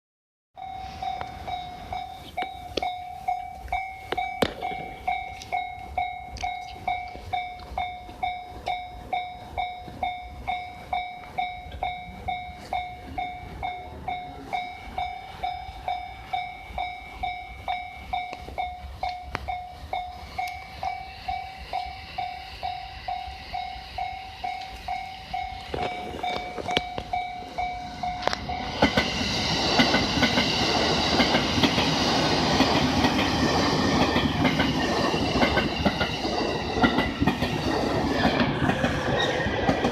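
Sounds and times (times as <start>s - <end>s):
level crossing bell ringing: 0.6s - 28.8s
train wheels rumbling on rail: 0.6s - 39.9s
high-pitched wheel squeal: 37.6s - 39.9s.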